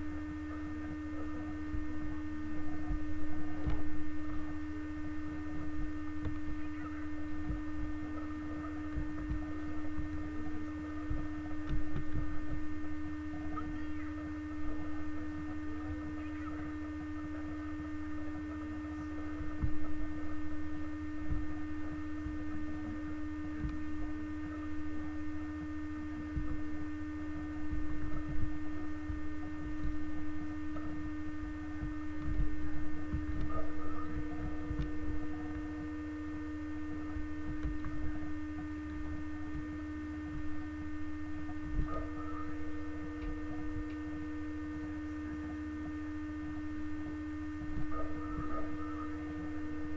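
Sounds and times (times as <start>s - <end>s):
electrical hum: 0.0s - 49.9s.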